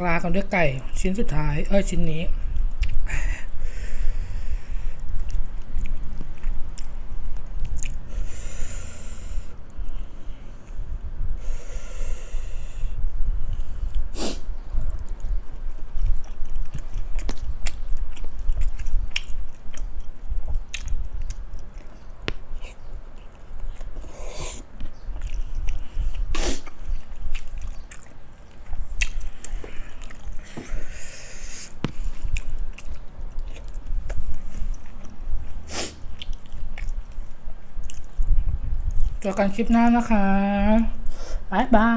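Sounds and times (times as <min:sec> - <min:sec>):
person chewing: 0:02.4 - 0:10.9, 0:13.4 - 0:39.2
wet mouth clicks and smacks: 0:05.2 - 0:08.0, 0:16.0 - 0:21.9, 0:29.0 - 0:30.4.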